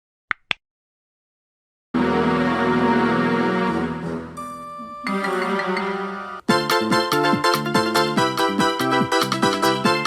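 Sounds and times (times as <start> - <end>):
upbeat electronic music: 3.8 - 10.0.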